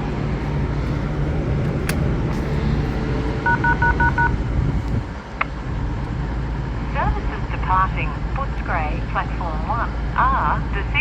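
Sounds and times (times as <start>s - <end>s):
station background rumble: 0.0s - 11.0s
two-tone beeps: 3.4s - 4.3s.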